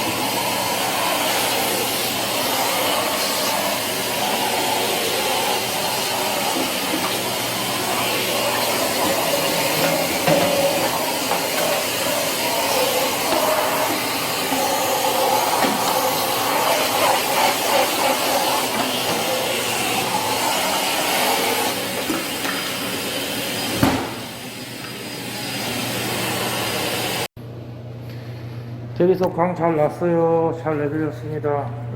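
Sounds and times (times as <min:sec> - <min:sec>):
polishing machine grinding stone: 0:00.0 - 0:21.8.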